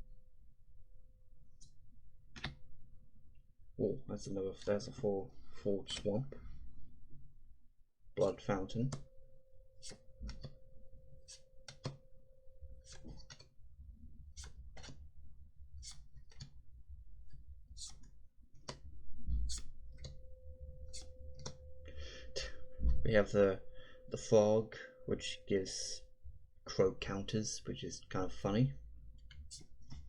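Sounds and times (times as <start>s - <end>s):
cards flipping and clicking: 11.3s - 12.0s, 12.8s - 13.5s, 14.4s - 15.0s, 15.8s - 16.6s, 17.8s - 18.8s.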